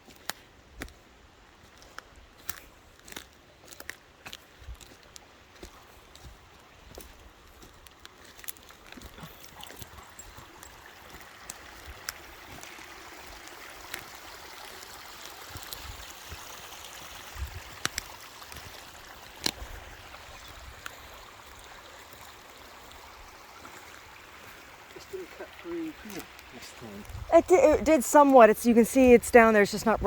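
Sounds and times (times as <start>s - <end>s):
flowing water hissing: 9.0s - 29.7s.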